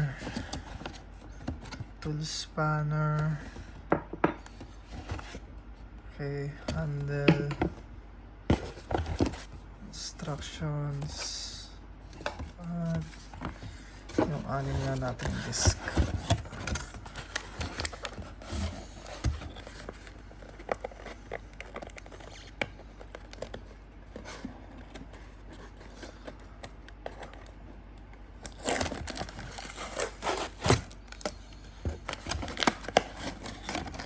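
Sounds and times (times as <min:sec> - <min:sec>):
packaging rustling: 0:12.5 - 0:27.6, 0:28.4 - 0:34.0.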